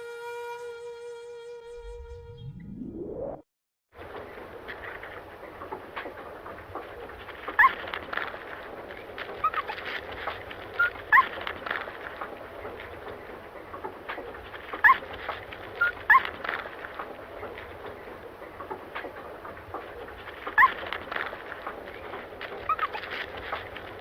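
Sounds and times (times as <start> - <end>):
crackly rustle: 4.0 - 24.0
agouti squeaking: 7.4 - 12.1, 14.6 - 16.8, 20.0 - 24.0.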